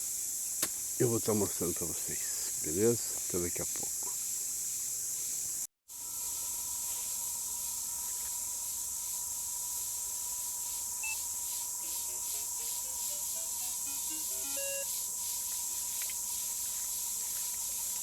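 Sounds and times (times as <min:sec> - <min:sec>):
insects droning: 0:00.0 - 0:18.0
steady electronic tone: 0:12.4 - 0:15.1
short electronic beeps: 0:13.3 - 0:14.9.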